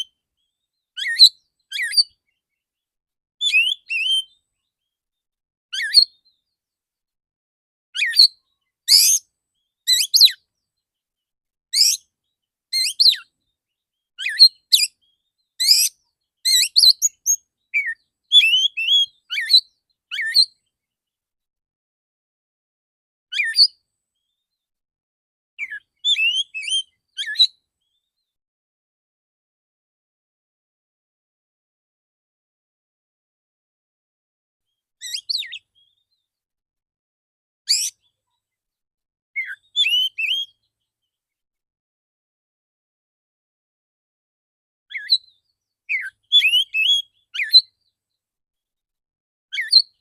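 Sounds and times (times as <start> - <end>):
bird singing whistles and chirps: 0.0 - 2.4, 3.4 - 4.5, 5.8 - 6.5, 8.0 - 9.3, 9.9 - 10.5, 11.8 - 12.1, 12.7 - 13.3, 14.2 - 20.6, 23.3 - 24.4, 25.6 - 28.3, 35.0 - 36.2, 37.7 - 38.1, 39.4 - 40.8, 44.9 - 47.9, 49.5 - 50.0.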